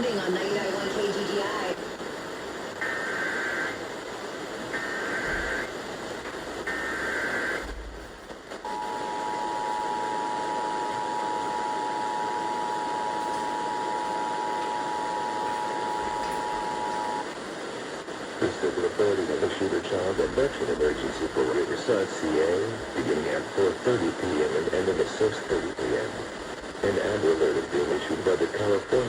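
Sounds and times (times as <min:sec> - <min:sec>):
radio hiss: 0:00.0 - 0:29.0
digital data bursts: 0:02.8 - 0:03.8, 0:04.7 - 0:05.7, 0:06.7 - 0:07.6.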